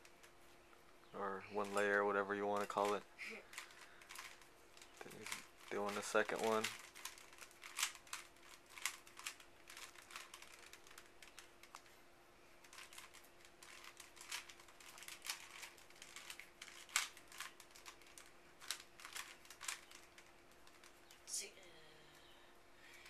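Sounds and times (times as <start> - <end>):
puzzle cube plastic clicks: 2.6 - 11.9, 12.6 - 21.2.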